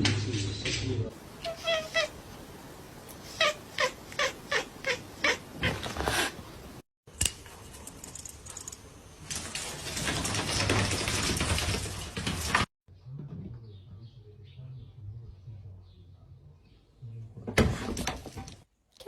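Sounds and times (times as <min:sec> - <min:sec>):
cat calling: 0:01.4 - 0:02.2, 0:03.2 - 0:06.2.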